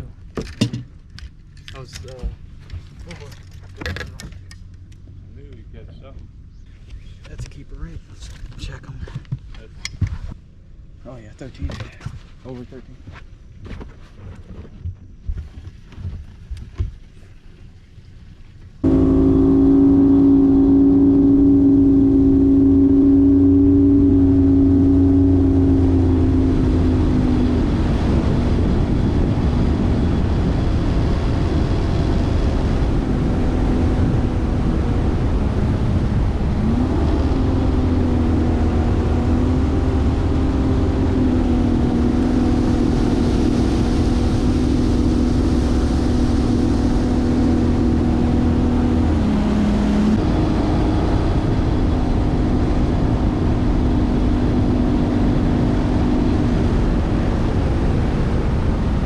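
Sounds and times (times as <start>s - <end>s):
outboard motor running: 18.5s - 59.0s
wind and water rushing: 18.8s - 59.0s.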